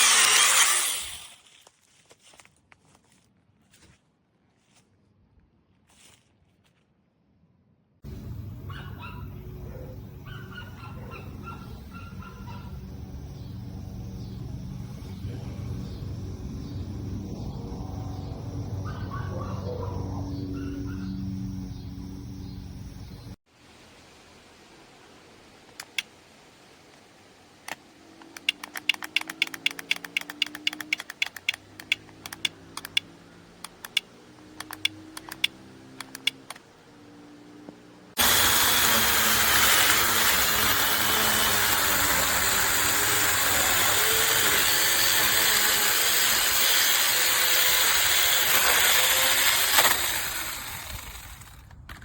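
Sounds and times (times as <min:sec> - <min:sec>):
mini chainsaw motor running: 0:00.0 - 0:01.5, 0:08.1 - 0:17.4, 0:28.2 - 0:36.6, 0:38.2 - 0:52.0
sharp clicks: 0:25.7 - 0:26.1, 0:27.6 - 0:36.7.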